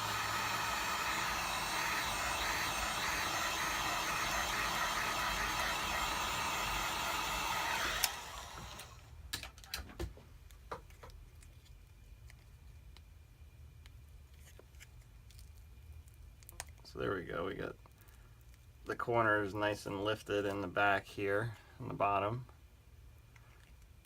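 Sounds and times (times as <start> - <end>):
hot-air gun blowing: 0.0 - 9.2.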